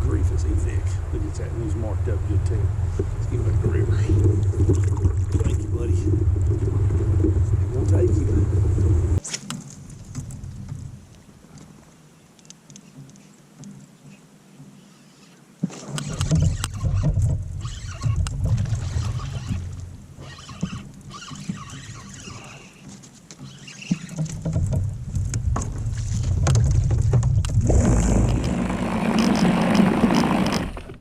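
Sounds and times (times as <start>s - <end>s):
water rushing and splashing: 0.0s - 9.2s
kayak rumbling and knocking: 0.0s - 12.0s, 15.6s - 31.0s.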